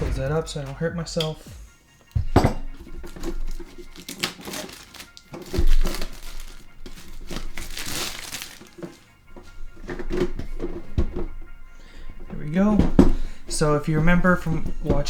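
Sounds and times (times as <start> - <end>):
plastic wrap crinkling and tearing: 2.8 - 9.1.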